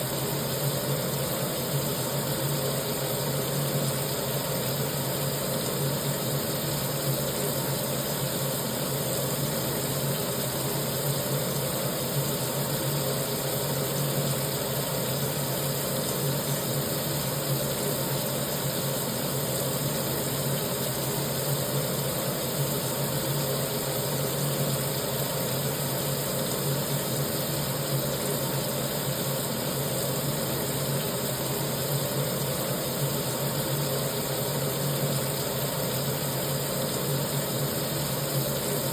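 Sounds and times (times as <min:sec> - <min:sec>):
tap water pouring into sink: 0:00.0 - 0:38.9.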